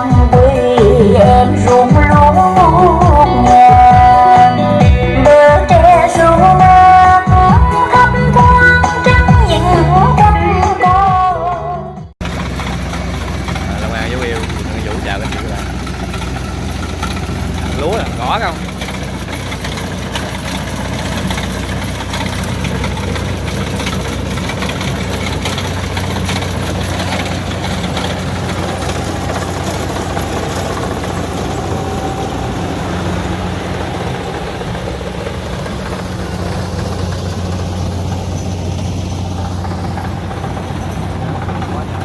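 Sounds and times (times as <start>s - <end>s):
diesel engine droning: 0.0s - 42.0s
threshing machine clattering: 12.2s - 42.0s.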